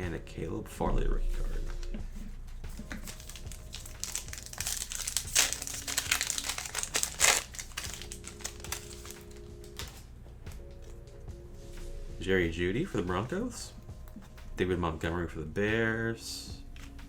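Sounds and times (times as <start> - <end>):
plastic wrapper crinkling: 2.7 - 10.0.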